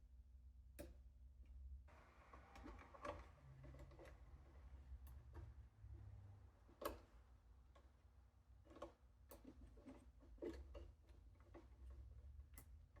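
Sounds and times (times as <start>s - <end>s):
faint clicks and taps of wires: 0.8s - 1.0s, 8.6s - 13.0s.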